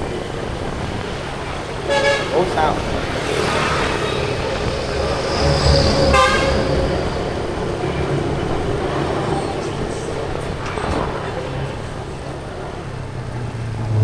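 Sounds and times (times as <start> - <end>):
street traffic rumble: 0.0 - 14.0
vehicle horn toot: 1.9 - 2.6, 5.4 - 7.0.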